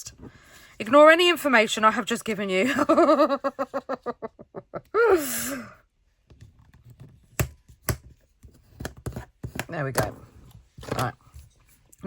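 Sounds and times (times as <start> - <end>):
woman laughing: 2.6 - 5.7
breathy sigh: 5.0 - 5.8.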